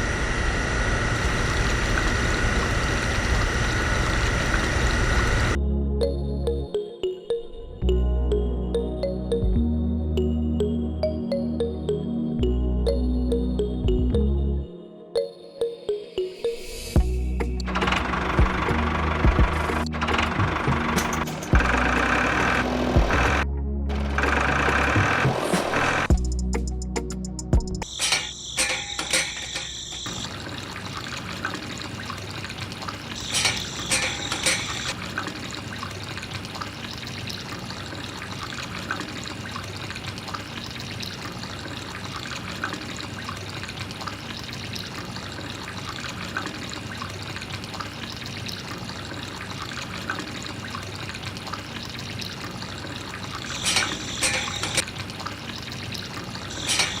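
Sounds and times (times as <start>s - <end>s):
water trickling and pouring: 27.8s - 57.0s.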